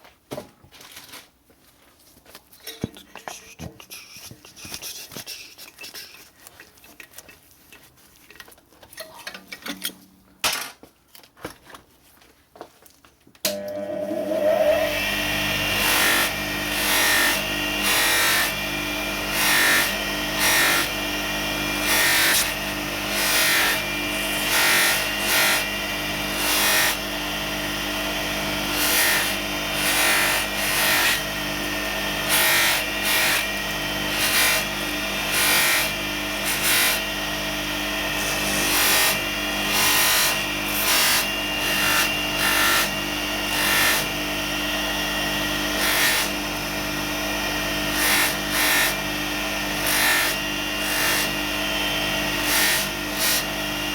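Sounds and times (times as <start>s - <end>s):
metal rubbing on polishing mop: 3.2s - 7.0s
bench grinder motor humming: 13.5s - 53.9s.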